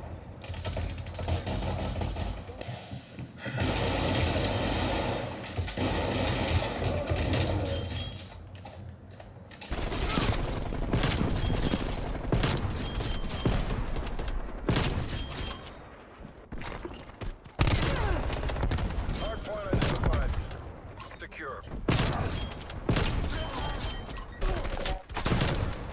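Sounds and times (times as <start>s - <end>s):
video game automatic gunfire: 3.5s - 7.6s, 9.7s - 15.3s.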